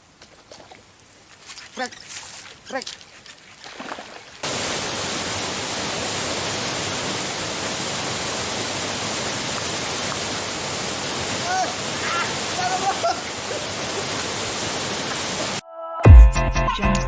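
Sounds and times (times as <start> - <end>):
waterfall roaring: 4.4 - 15.6.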